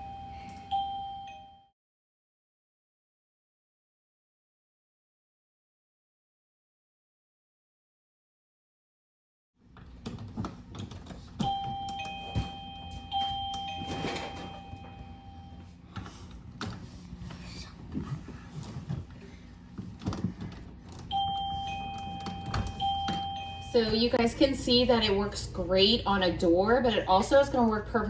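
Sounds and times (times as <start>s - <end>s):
electronic ding-dong door chime: 0.0s - 1.7s, 11.4s - 15.6s, 21.1s - 24.8s.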